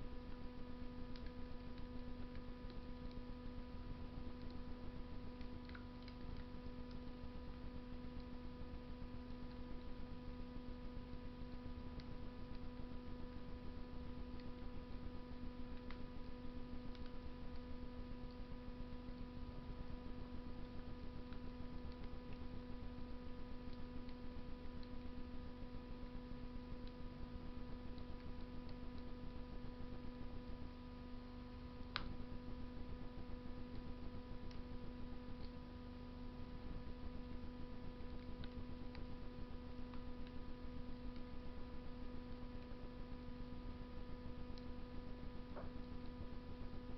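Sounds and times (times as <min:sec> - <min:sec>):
electrical hum: 0:00.0 - 0:46.9
wood fire crackling: 0:00.1 - 0:10.1.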